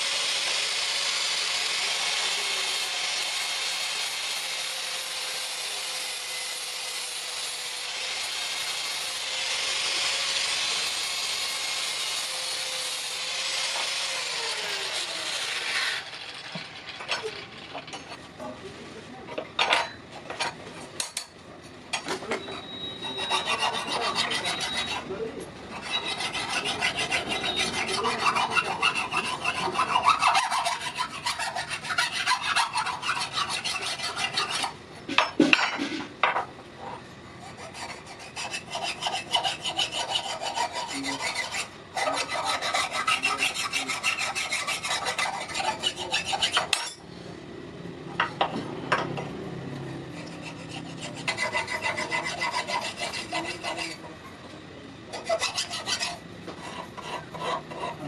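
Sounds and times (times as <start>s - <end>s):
power grinder on metal: 0.0s - 18.1s, 23.0s - 34.8s, 37.4s - 47.0s, 49.9s - 54.0s, 55.1s - 58.0s
hand file rasping metal: 22.5s - 34.8s, 37.4s - 47.0s, 50.1s - 54.2s, 55.1s - 58.0s.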